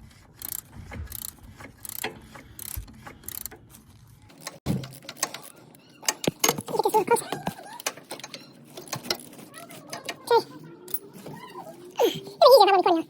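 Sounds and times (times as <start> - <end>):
ratchet wrench clicking: 0.4 - 3.8.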